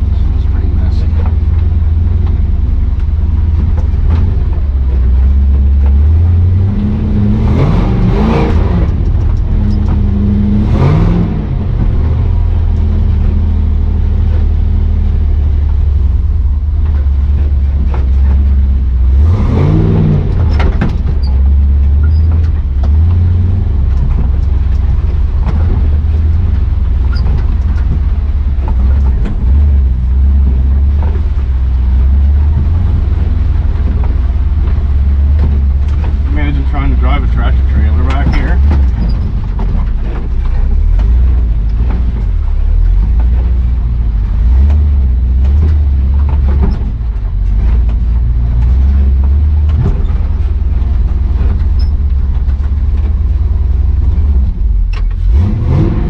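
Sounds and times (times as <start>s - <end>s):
pickup engine revving: 0.0s - 56.0s.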